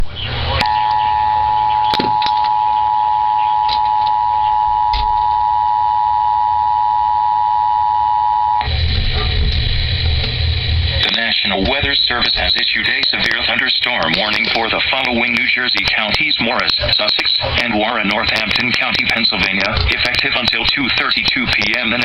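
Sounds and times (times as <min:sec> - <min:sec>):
two-tone attention signal: 0:00.6 - 0:08.7.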